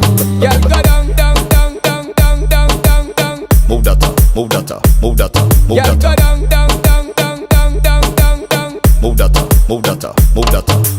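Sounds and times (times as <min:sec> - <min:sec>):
dancehall reggae track: 0:00.0 - 0:10.9.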